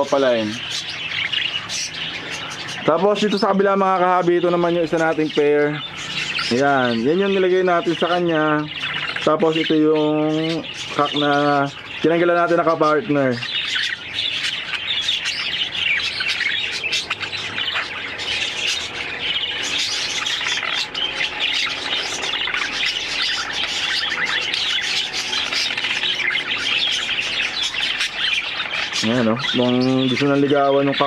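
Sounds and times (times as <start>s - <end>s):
budgerigars chattering: 0.0s - 31.0s.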